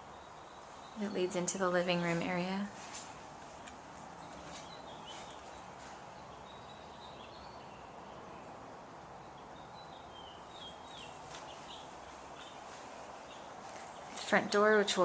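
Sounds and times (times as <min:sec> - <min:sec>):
faint bird chirps: 0:00.0 - 0:01.6
background hiss: 0:00.0 - 0:15.0.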